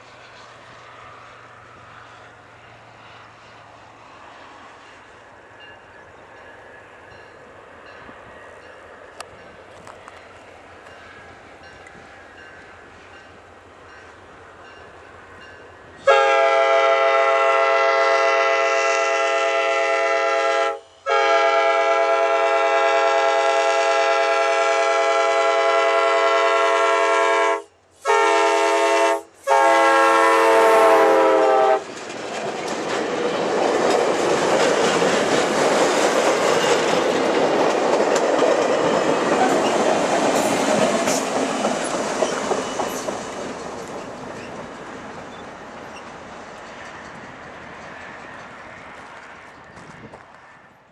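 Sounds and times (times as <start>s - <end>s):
train wheel and rail noise: 0.0s - 50.9s
locomotive horn blasts: 16.0s - 31.8s.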